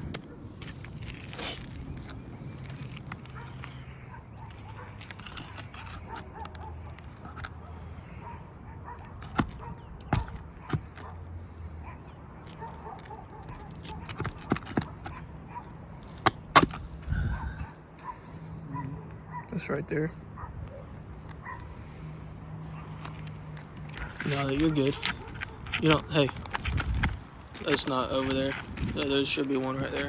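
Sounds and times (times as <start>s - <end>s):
shingles snapping and knocking: 12.5s - 15.3s, 16.0s - 17.1s, 22.9s - 30.0s.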